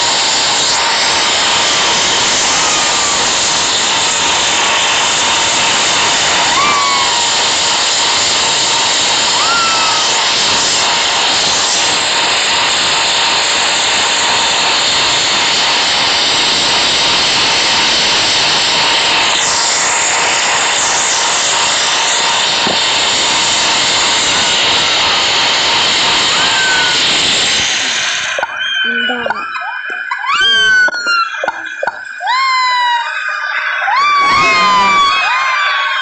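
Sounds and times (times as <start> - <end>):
washing machine whooshing: 0.0 - 36.0
short chirping squeaks: 28.4 - 32.3.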